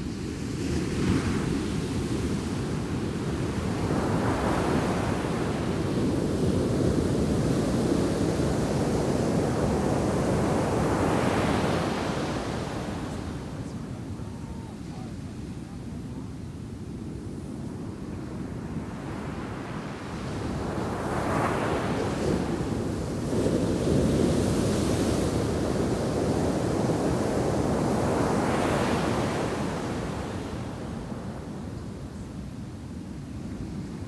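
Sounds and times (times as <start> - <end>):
waves crashing on beach: 2.5 - 15.5, 18.9 - 32.8.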